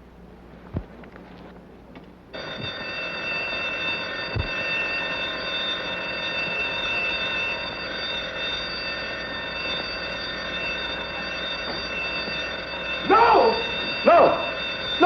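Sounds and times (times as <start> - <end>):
electric alarm bell ringing: 2.3 - 15.0
dull low knocks: 4.2 - 5.1.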